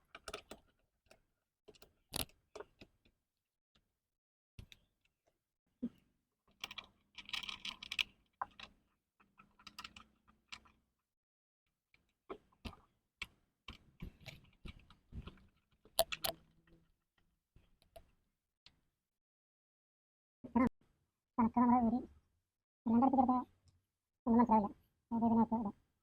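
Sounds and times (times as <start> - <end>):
plastic parts clicking and knocking: 0.0 - 3.2, 6.5 - 10.9, 12.0 - 16.9.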